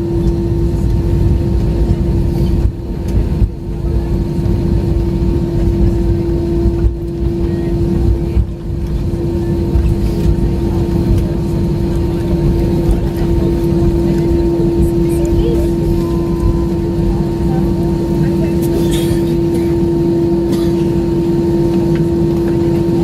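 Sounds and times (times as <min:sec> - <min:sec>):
airliner cabin rumble: 0:00.0 - 0:23.0
constant cabin hum: 0:00.0 - 0:23.0.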